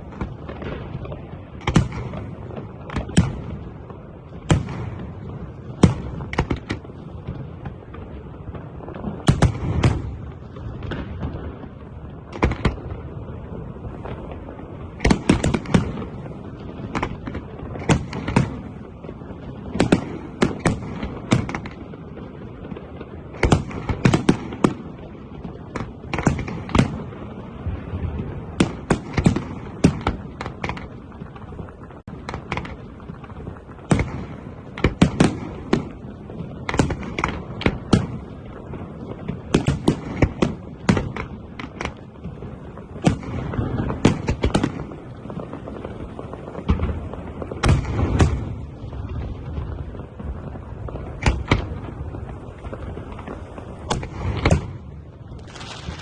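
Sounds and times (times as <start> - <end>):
background rumble: 0.0 - 56.0
firework shells bursting: 28.5 - 31.6, 52.6 - 56.0.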